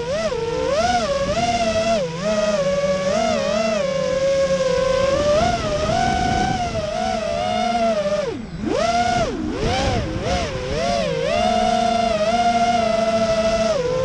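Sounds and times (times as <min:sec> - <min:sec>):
quadcopter motors whining: 0:00.0 - 0:14.0.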